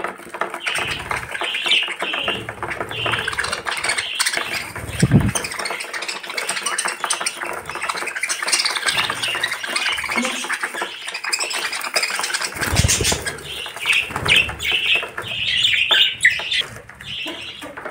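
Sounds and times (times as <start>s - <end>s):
budgerigars chattering: 0.4s - 17.9s
low thumps: 4.9s - 5.4s.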